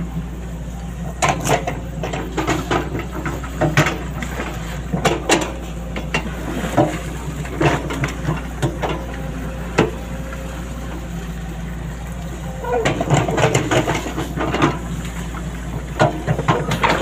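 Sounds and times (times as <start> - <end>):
excavator engine running: 0.0 - 17.0
clanks and knocks: 1.0 - 10.2, 12.6 - 17.0.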